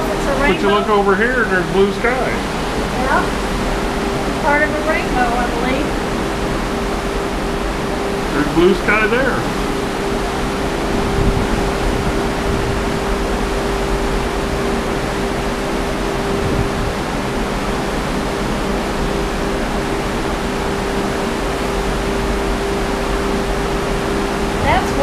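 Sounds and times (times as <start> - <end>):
sea: 0.0 - 25.0
steady hum-like tone: 0.0 - 25.0
strong wind on microphone: 9.4 - 18.3, 23.9 - 25.0.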